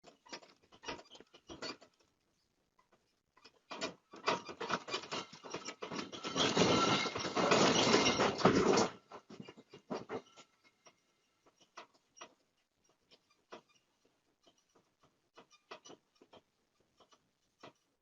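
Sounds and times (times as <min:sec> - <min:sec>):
loose objects rattling and clattering: 0:03.5 - 0:10.5.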